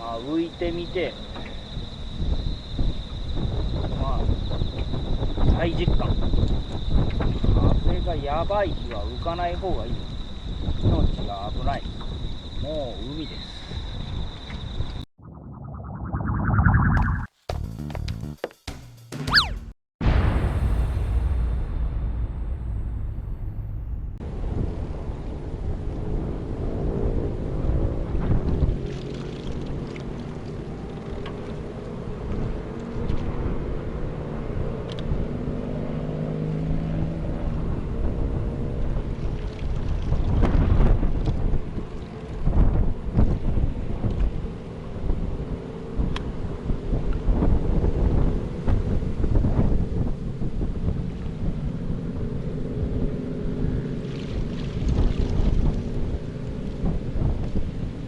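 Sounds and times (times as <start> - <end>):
strong wind buffeting microphone: 1.5 - 15.1, 20.0 - 29.8, 37.0 - 58.0
low droning hum: 20.7 - 27.7, 49.8 - 58.0
rough water: 27.8 - 33.4, 38.8 - 44.9, 53.1 - 58.0
higher rustles or splashes: 53.9 - 56.1.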